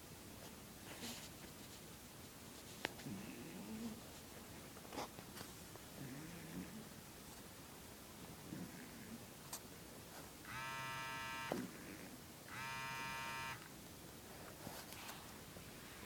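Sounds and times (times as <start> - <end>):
electric buzzes: 10.5 - 11.7, 12.5 - 13.7.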